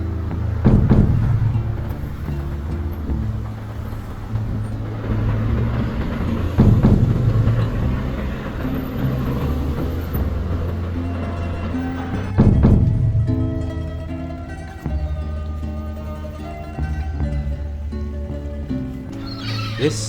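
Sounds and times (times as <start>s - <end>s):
background music with low held notes: 0.0s - 20.0s
deep drum hit: 0.5s - 14.1s.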